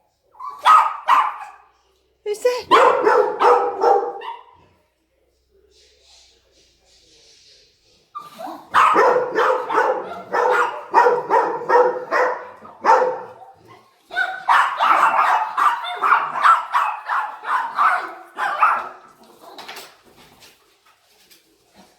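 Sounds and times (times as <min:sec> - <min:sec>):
small dogs barking and yapping: 0:00.4 - 0:01.7, 0:02.4 - 0:04.7, 0:08.2 - 0:19.9.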